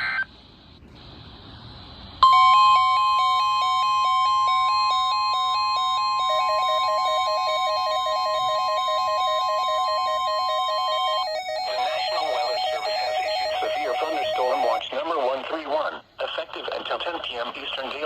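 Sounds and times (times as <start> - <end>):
two-note electronic beeping: 2.2 - 14.8
steady high alert tone: 2.2 - 14.9.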